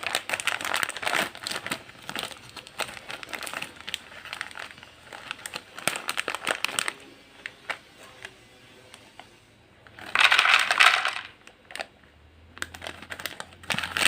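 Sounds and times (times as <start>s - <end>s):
plastic packet crinkling: 0.0s - 8.3s, 9.9s - 14.0s.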